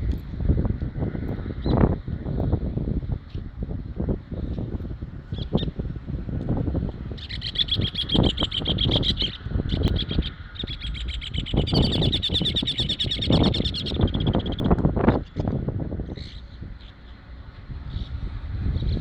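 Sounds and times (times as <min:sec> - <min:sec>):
low rumbling noise: 0:00.0 - 0:19.0
songbird trilling: 0:05.3 - 0:05.8, 0:07.1 - 0:15.4.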